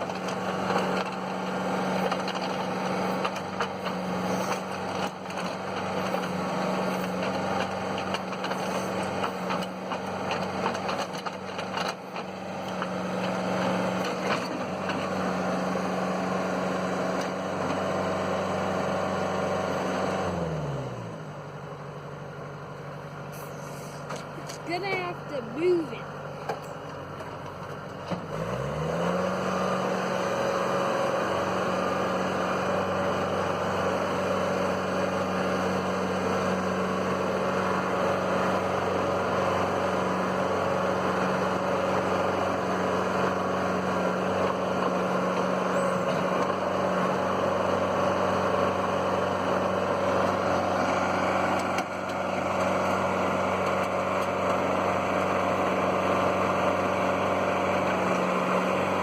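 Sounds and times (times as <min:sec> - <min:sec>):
tractor diesel engine revving: 0:00.0 - 0:59.0.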